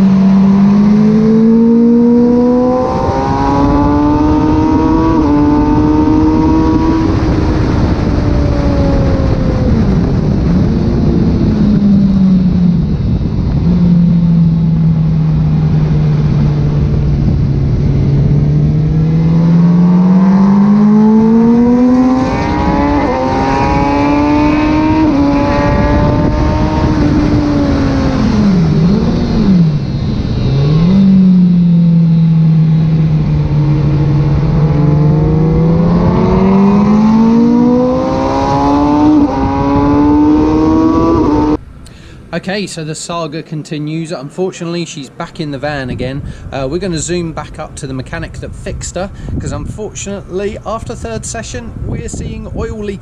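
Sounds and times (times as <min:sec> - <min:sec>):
motorcycle engine revving: 0:00.0 - 0:41.8
wind noise: 0:00.0 - 0:53.0.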